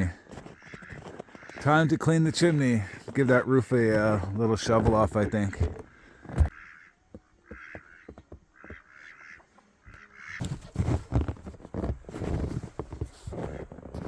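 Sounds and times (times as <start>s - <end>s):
ducks quacking: 0.3s - 10.5s
thuds and scuffs: 10.4s - 14.0s.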